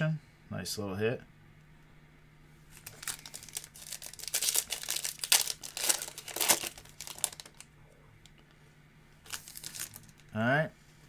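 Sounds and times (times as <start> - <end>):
plastic wrapper crinkling: 2.7 - 7.7, 9.2 - 10.3.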